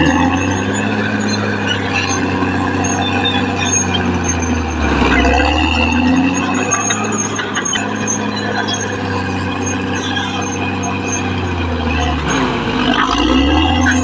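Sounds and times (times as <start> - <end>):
bulldozer diesel engine humming: 0.0 - 14.0
short high squeaks: 0.0 - 14.0.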